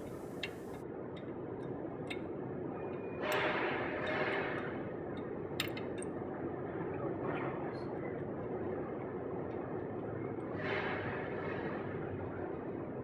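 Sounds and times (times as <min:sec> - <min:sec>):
steady background hiss: 0:00.0 - 0:00.8.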